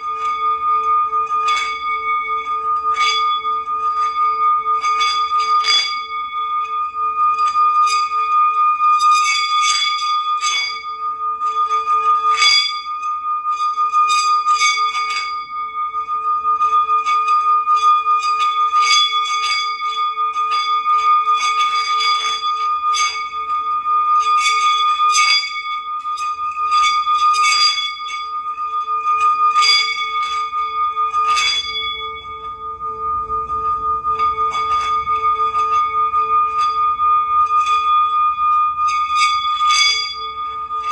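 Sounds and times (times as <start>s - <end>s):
bells struck: 0.0s - 8.8s, 24.6s - 40.9s
steady held tones: 0.0s - 14.4s, 19.4s - 40.9s.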